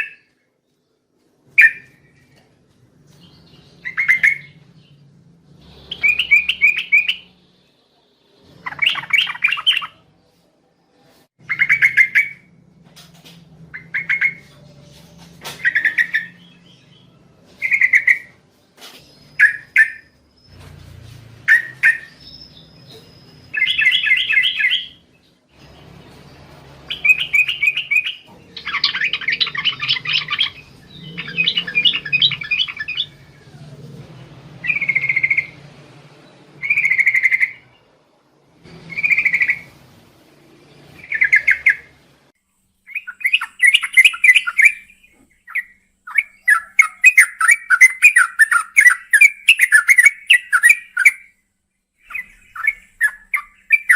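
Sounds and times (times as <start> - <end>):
bird singing whistled phrases: 1.6 - 2.0, 19.2 - 20.5, 21.5 - 25.0, 42.9 - 51.3, 52.0 - 53.9.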